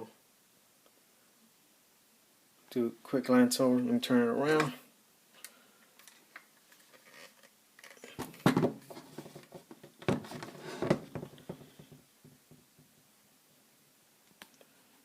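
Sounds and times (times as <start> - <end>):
rifle handling knocks and rubbing: 6.1 - 13.0.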